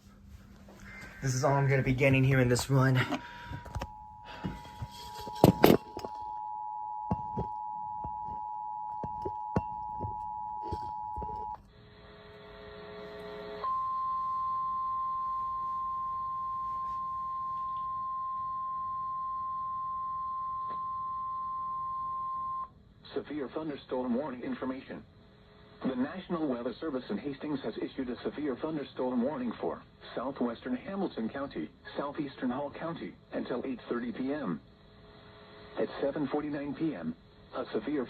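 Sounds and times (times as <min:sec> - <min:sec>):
faint static: 0:00.0 - 0:18.0
single-pitch alarm tone: 0:03.1 - 0:11.6, 0:13.6 - 0:22.7.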